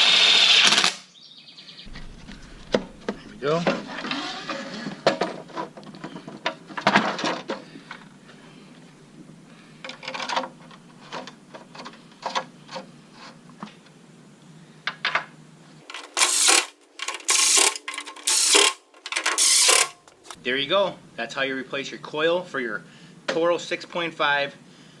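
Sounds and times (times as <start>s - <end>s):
recoil starter cord pulls: 15.9s - 20.4s
small clicks and knocks: 15.9s - 20.4s.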